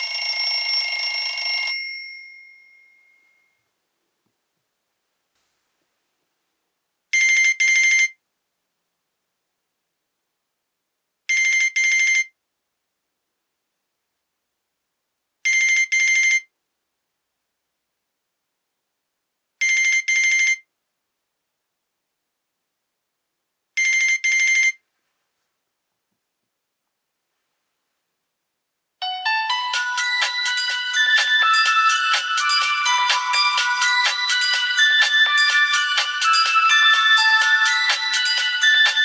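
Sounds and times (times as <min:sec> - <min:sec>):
phone ringtone bell trill: 0:00.0 - 0:03.6, 0:29.0 - 0:39.0.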